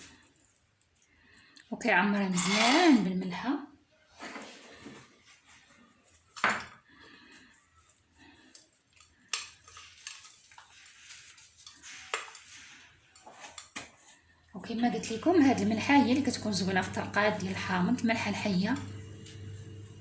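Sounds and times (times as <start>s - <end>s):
soft rustling and handling: 4.1s - 17.5s.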